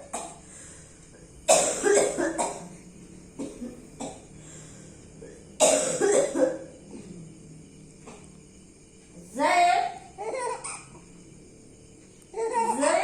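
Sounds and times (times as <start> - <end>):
person coughing: 1.5 - 2.7, 5.6 - 7.2.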